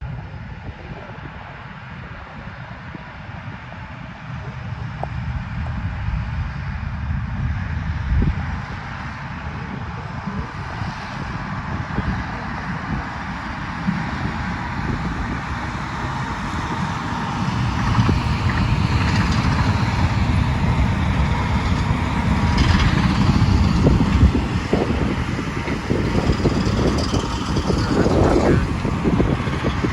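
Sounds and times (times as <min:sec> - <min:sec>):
tractor engine drone: 0:00.0 - 0:29.9
machinery clatter: 0:13.8 - 0:29.9.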